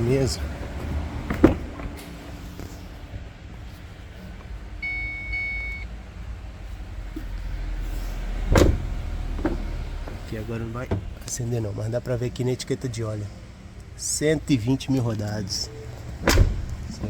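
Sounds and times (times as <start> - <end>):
steady electronic beep: 4.8 - 5.9.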